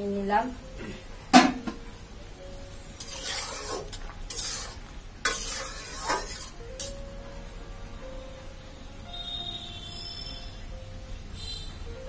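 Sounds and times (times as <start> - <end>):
spoon scraping a pot: 3.0 - 6.9.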